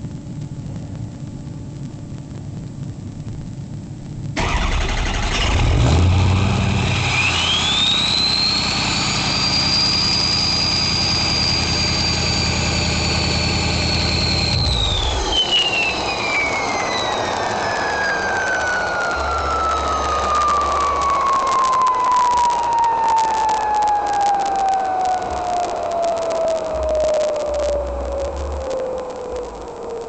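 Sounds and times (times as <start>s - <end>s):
diesel engine running: 4.4s - 16.1s
turbo whistle: 6.5s - 29.7s.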